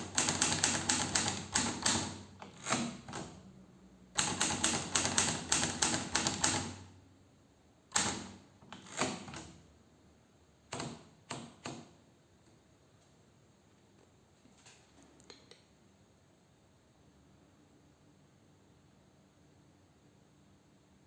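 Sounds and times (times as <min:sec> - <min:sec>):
typewriter key strikes: 0:00.0 - 0:03.4, 0:04.2 - 0:06.8, 0:07.9 - 0:09.5.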